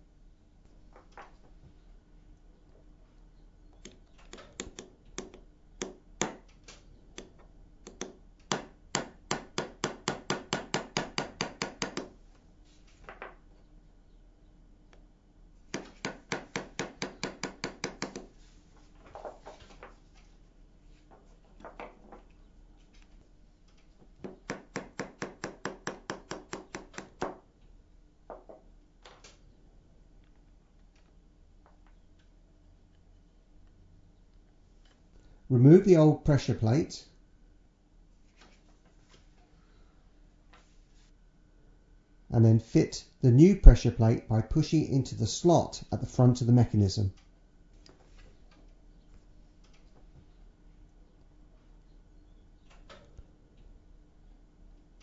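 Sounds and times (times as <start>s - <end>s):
hammer tapping steel punch: 3.7s - 6.4s, 7.2s - 12.1s, 15.7s - 18.3s, 24.2s - 27.4s.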